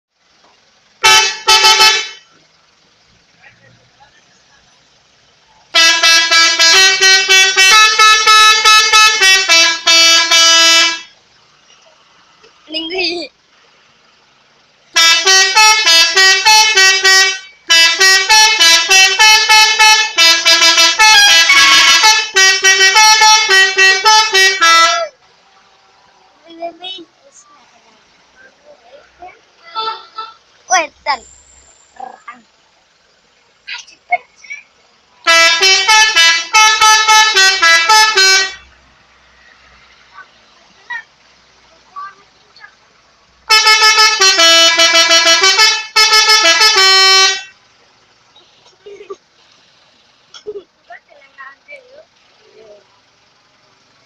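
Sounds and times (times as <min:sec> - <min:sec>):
musical vehicle horn melody: 0:01.0 - 0:02.4, 0:05.7 - 0:11.2, 0:14.9 - 0:25.2, 0:29.6 - 0:30.5, 0:35.2 - 0:38.8, 0:43.4 - 0:47.6.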